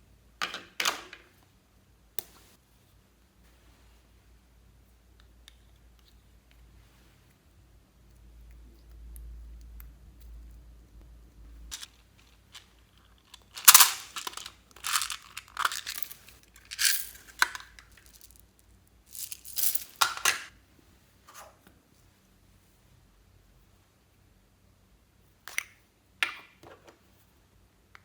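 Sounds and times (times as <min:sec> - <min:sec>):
slime with beads crackling: 0:11.7 - 0:18.5, 0:19.1 - 0:20.0.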